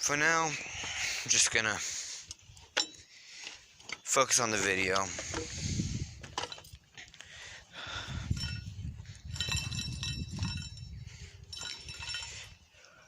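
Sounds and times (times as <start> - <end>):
metal tools clinking and clanking: 2.3 - 3.1, 3.8 - 5.6, 6.2 - 7.0, 8.3 - 12.7.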